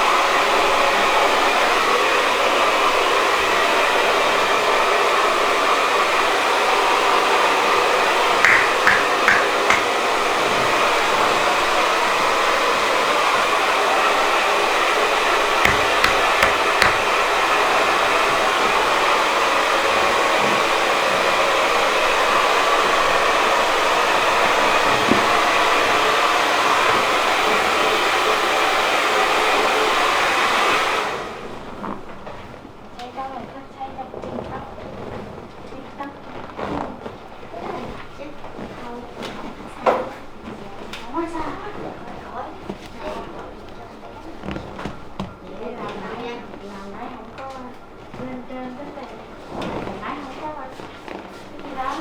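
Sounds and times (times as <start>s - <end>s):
hair dryer blowing: 0.2s - 31.5s.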